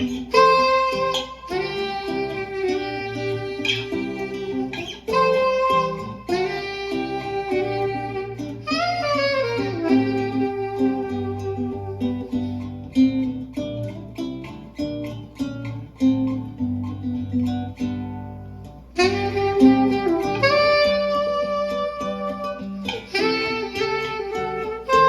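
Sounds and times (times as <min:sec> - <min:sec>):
saxophone long held notes: 0:00.0 - 0:13.0, 0:19.0 - 0:25.0
picked guitar notes: 0:00.0 - 0:25.0.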